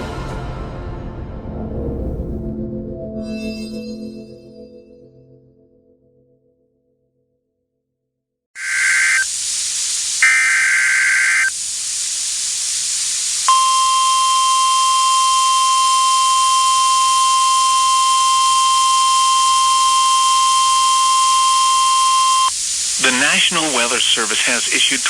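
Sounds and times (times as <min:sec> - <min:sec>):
buzzy data tones: 0:08.6 - 0:25.0
radio static hiss: 0:08.6 - 0:25.0
weather radio alarm tone: 0:08.6 - 0:25.0.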